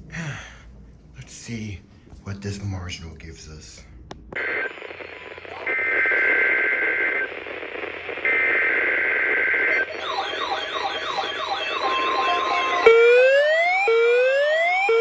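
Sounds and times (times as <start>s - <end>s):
radio static hiss: 4.3s - 12.9s
screeching data tones: 4.4s - 13.5s
wavering siren-like alert tones: 9.7s - 15.0s.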